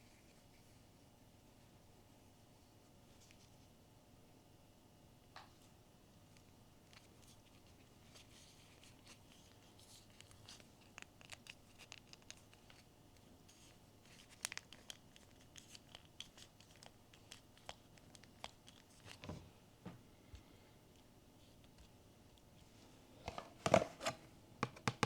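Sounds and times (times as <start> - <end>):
packaging clicks and taps: 10.2 - 12.8, 23.3 - 25.0.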